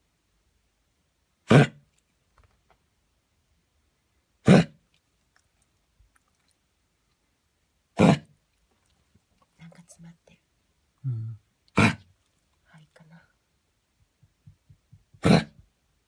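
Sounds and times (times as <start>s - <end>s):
dog coughing: 1.5s - 1.9s, 4.4s - 4.8s, 8.0s - 8.4s, 11.7s - 12.1s, 15.2s - 15.7s.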